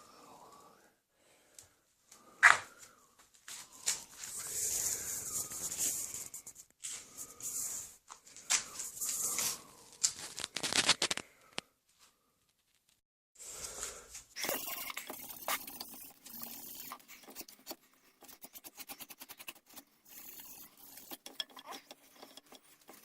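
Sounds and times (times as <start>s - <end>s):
rough rubbing strokes on horn: 4.0s - 8.0s, 14.3s - 23.0s.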